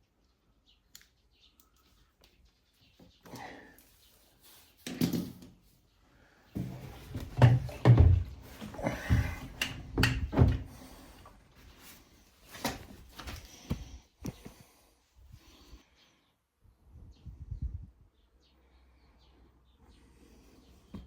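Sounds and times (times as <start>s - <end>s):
objects knocking and clunking: 6.6s - 10.9s.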